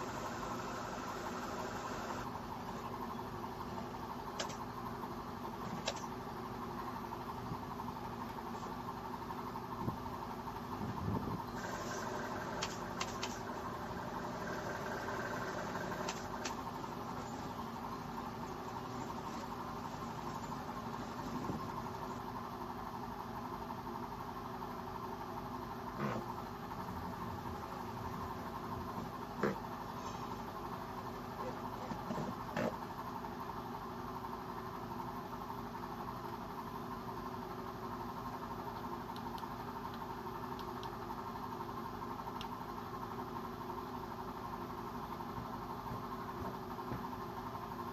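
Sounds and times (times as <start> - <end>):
mechanical hum: 0.0 - 47.9.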